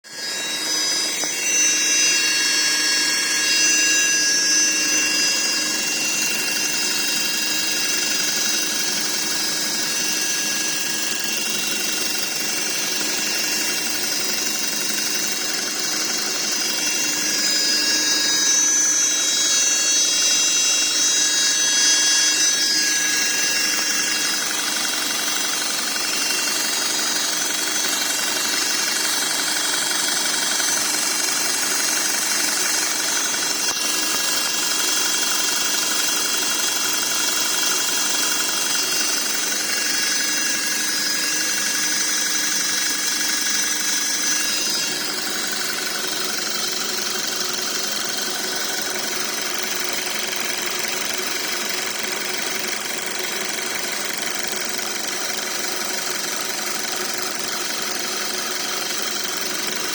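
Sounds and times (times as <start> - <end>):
gearbox whine: 0.0 - 59.9
steady high tones: 0.1 - 45.2.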